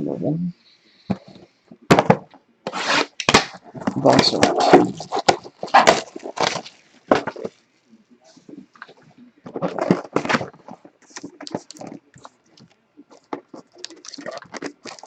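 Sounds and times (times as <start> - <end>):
cardboard rustling and tearing: 2.7 - 7.5.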